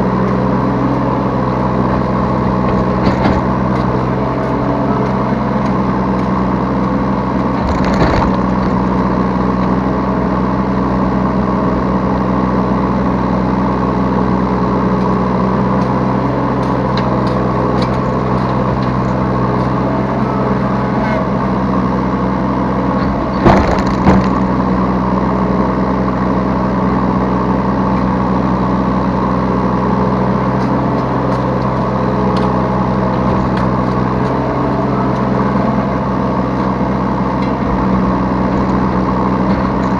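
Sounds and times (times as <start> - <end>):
excavator diesel engine running: 0.0 - 39.9
sharp knocks: 23.4 - 24.5.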